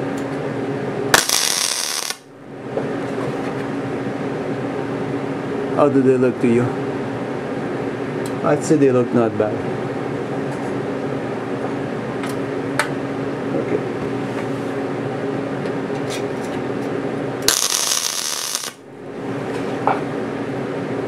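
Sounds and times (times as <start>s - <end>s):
steady shop hum: 0.0s - 21.0s
welder hissing crackle: 1.2s - 2.2s, 17.5s - 18.8s.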